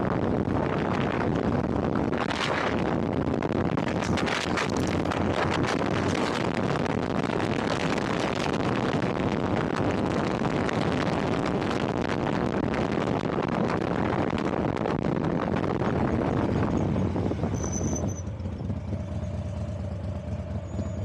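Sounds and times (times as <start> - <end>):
wind buffeting microphone: 0.0 - 17.6
vehicle road noise: 0.0 - 21.0.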